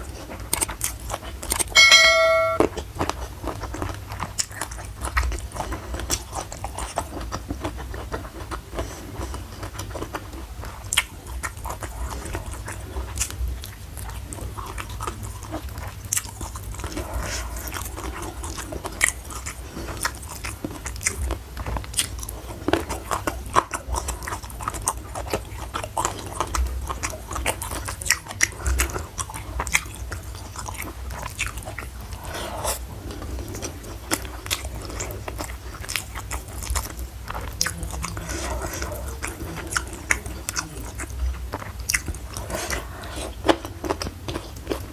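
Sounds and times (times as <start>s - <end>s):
chewing crunchy food: 0.0s - 1.8s, 2.7s - 44.9s
low steady hum: 1.7s - 2.7s.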